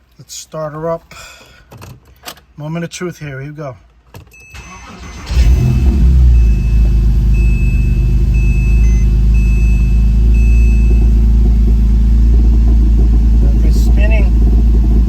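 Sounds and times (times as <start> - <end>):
engine starter cranking: 4.5 - 6.7
car engine idling: 4.8 - 15.0.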